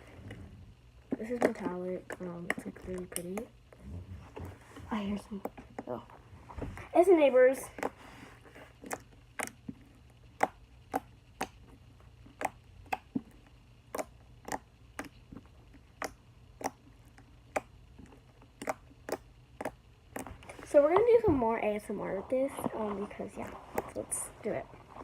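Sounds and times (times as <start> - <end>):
slime with beads clicking: 8.8 - 9.6, 12.3 - 13.2, 15.8 - 20.3.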